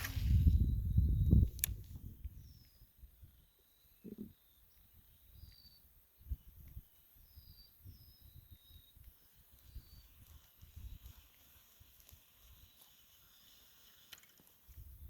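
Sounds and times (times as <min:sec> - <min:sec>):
bird chirping: 0:02.2 - 0:06.5, 0:07.2 - 0:11.2.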